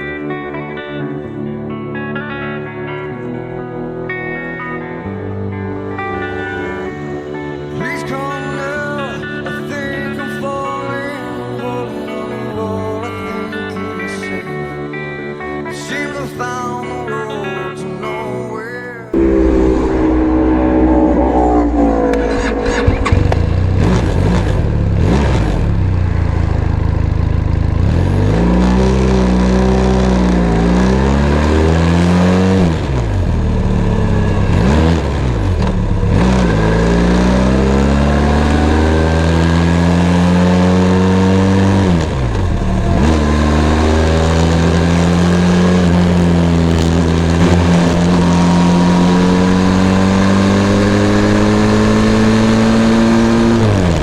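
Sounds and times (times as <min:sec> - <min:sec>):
motorcycle engine accelerating: 0:19.2 - 0:54.0.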